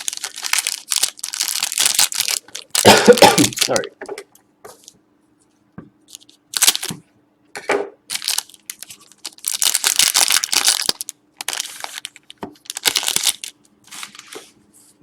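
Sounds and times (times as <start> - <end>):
wrapper tearing and crinkling: 0.0 - 3.9, 6.1 - 6.9, 8.1 - 14.4.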